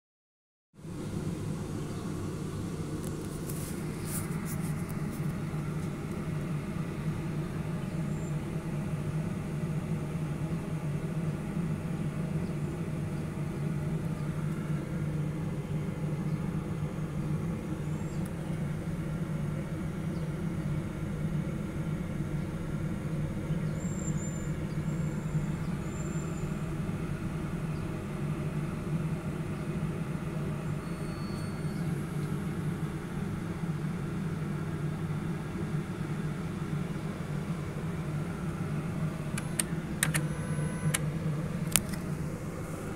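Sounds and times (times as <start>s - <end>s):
low mechanical drone: 0.8s - 42.9s.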